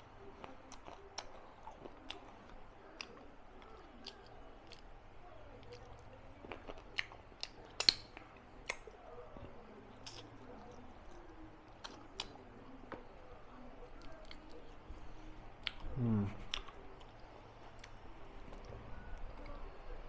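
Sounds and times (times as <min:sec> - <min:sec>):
person chewing food: 0:00.0 - 0:20.0
mouth clicks and smacks: 0:05.6 - 0:09.0, 0:15.6 - 0:18.7.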